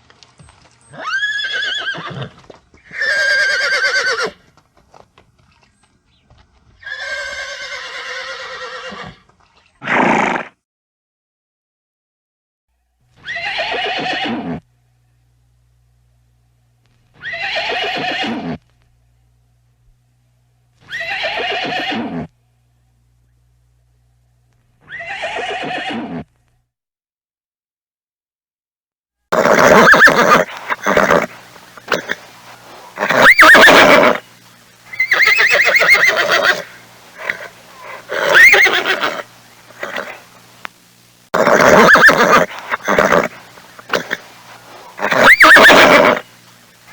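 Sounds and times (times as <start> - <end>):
horse whinnying: 0.9 - 4.4, 6.8 - 10.6, 13.2 - 14.6, 17.2 - 18.6, 20.8 - 22.3, 24.8 - 26.3, 29.3 - 34.2, 34.9 - 40.3, 41.3 - 46.3.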